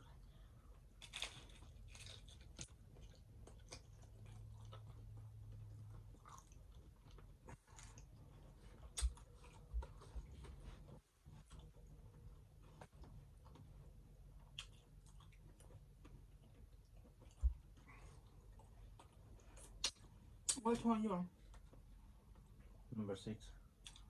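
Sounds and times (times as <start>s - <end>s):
person chewing crunchy taco shells: 0.8s - 10.0s, 14.4s - 20.1s.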